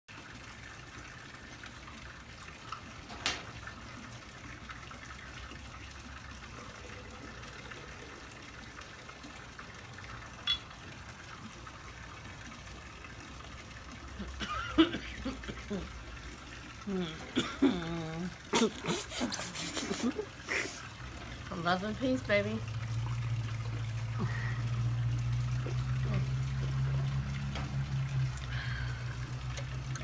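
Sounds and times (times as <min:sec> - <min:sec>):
woman snoring gurglingly: 0:16.9 - 0:20.2.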